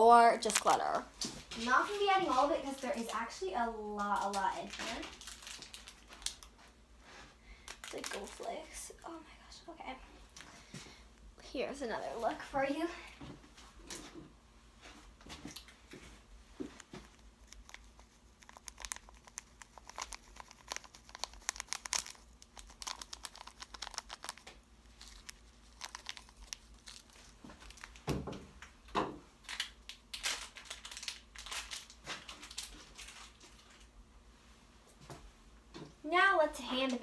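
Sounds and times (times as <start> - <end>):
plastic packaging crinkling: 0.4 - 1.0, 4.0 - 6.6, 7.6 - 8.5, 16.9 - 28.2, 29.4 - 33.9.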